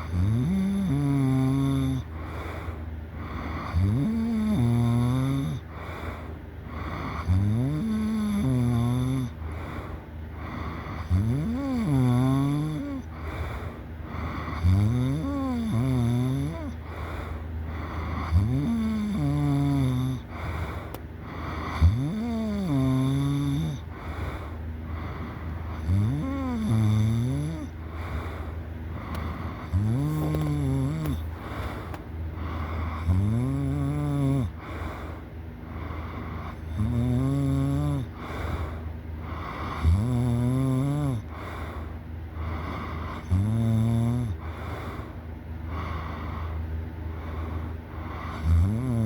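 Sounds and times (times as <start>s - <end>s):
person snoring loudly: 0.0s - 2.6s, 3.2s - 6.1s, 6.8s - 35.2s, 35.9s - 41.8s, 42.4s - 45.1s, 47.2s - 49.0s
steady low hum: 0.0s - 49.0s.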